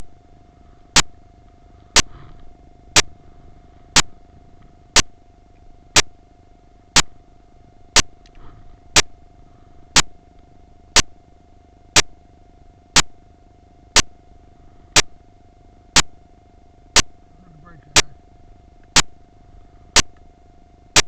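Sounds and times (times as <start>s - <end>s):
faint steady hum: 0.0s - 21.0s
sharp metallic clicks: 6.0s - 6.2s, 7.0s - 7.2s, 8.0s - 8.2s, 10.0s - 10.2s, 12.0s - 12.2s, 13.0s - 13.2s, 15.0s - 15.2s, 16.0s - 16.2s, 18.0s - 18.2s, 18.9s - 19.2s, 20.0s - 20.2s.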